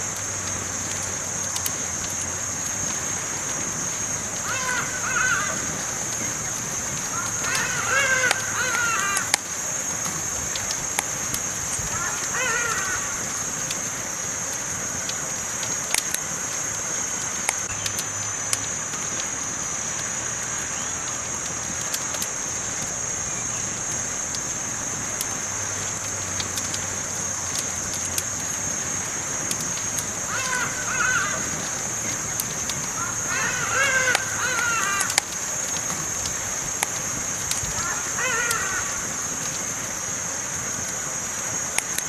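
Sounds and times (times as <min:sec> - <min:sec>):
campfire crackling and popping: 0:00.0 - 0:42.0
fire hissing: 0:00.0 - 0:42.0
bird calling: 0:04.4 - 0:09.4, 0:11.8 - 0:13.5, 0:30.2 - 0:36.5, 0:37.6 - 0:39.2.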